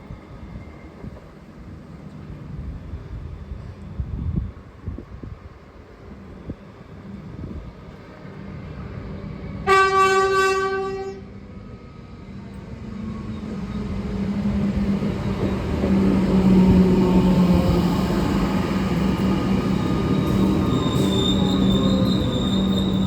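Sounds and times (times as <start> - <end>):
approaching train hum: 0.0 - 23.0
train horn blast: 9.6 - 11.3.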